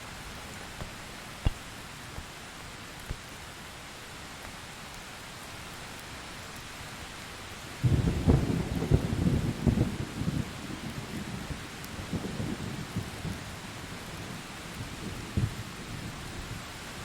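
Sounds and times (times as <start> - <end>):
steady rain: 0.0 - 17.0
thunder rumbling: 7.8 - 16.6.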